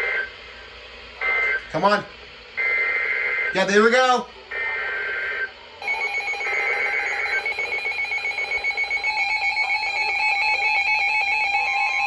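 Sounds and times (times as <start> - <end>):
digital data warble: 5.8 - 12.0
piercing alert tone: 5.8 - 12.0.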